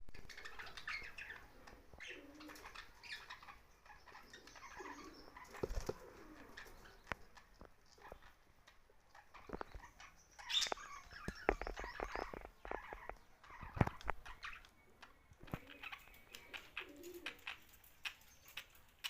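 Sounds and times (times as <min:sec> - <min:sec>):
budgerigars chirping: 0:00.2 - 0:07.4, 0:08.0 - 0:17.6.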